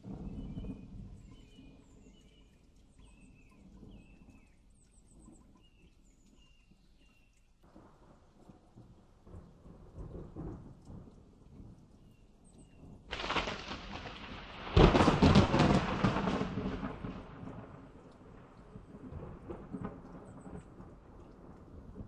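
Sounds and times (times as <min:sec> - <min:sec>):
low thunder rumble: 0:00.0 - 0:02.5, 0:07.7 - 0:22.0
thunderclap cracks: 0:13.1 - 0:18.5.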